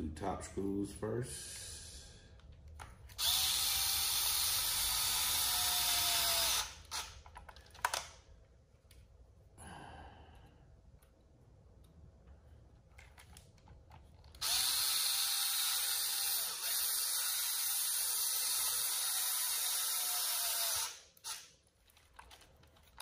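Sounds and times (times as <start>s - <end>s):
electric hex driver running: 3.1s - 7.2s, 14.4s - 21.5s.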